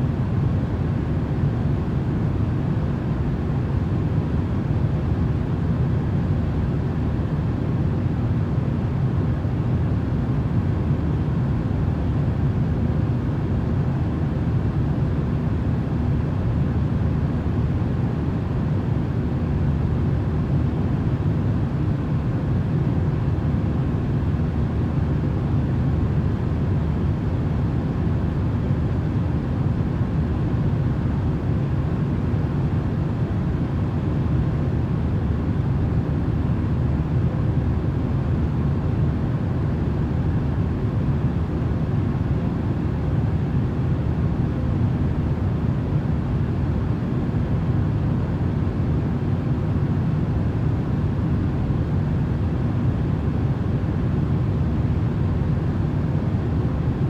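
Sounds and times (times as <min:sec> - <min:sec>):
steady low rumbling noise: 0:00.0 - 0:57.0.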